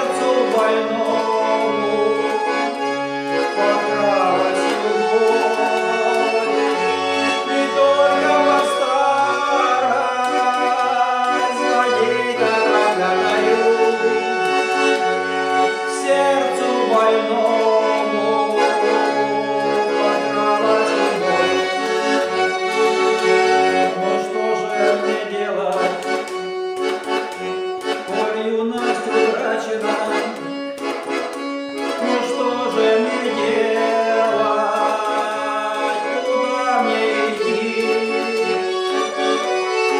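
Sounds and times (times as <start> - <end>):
accordion melody: 0.0 - 39.9.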